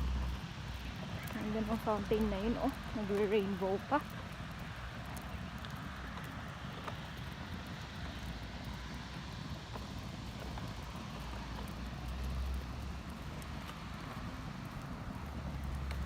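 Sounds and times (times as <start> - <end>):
low rumble: 0.0 - 4.0.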